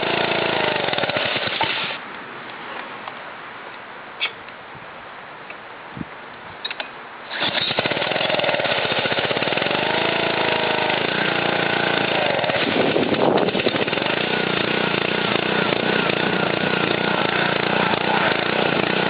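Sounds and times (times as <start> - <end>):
pressure washer engine running: 0.0 - 2.0, 7.3 - 19.0.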